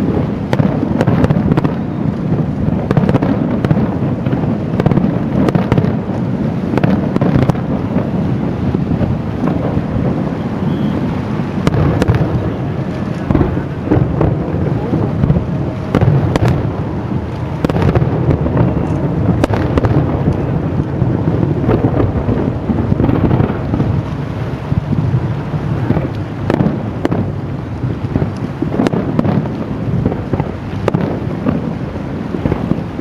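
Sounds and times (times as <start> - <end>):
firework cracks and pops: 0.0 - 33.0
firework shell bursts rumbling: 0.0 - 33.0.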